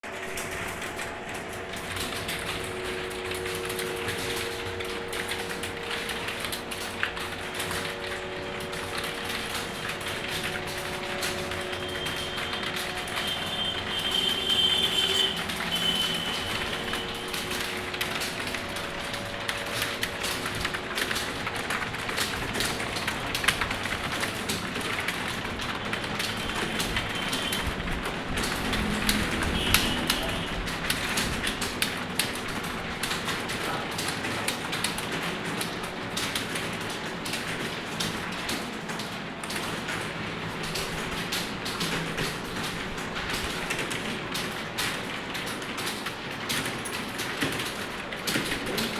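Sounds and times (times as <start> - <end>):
fast typing on keyboard: 0.1 - 48.9.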